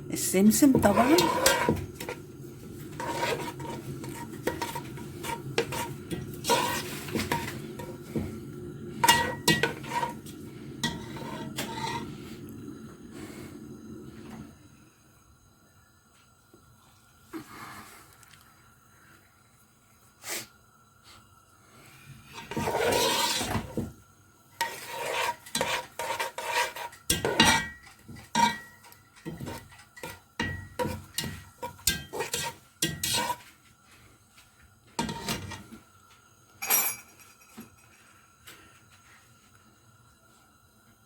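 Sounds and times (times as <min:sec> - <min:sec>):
spoon scraping a cooking pot: 0:00.6 - 0:08.3, 0:09.0 - 0:12.2, 0:22.3 - 0:23.9, 0:24.6 - 0:33.6, 0:35.0 - 0:35.7.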